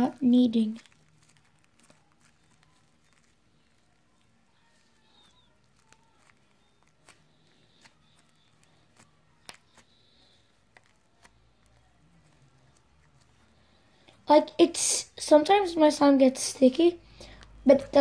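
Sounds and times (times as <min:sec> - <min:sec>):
sticky slime clicks and squelches: 0:00.6 - 0:12.9.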